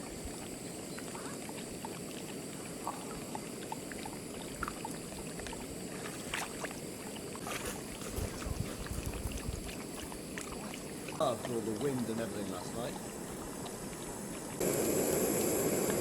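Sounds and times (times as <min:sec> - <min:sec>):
small waves lapping at shore: 0:01.1 - 0:13.1.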